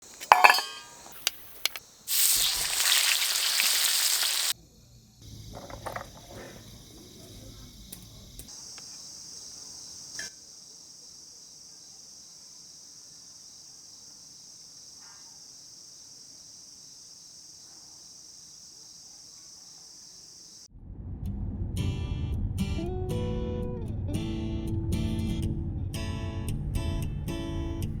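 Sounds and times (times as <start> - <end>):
crickets trilling: 0.0 - 20.7
food sizzling in a hot pan: 1.2 - 4.6
low rumble: 20.7 - 24.9.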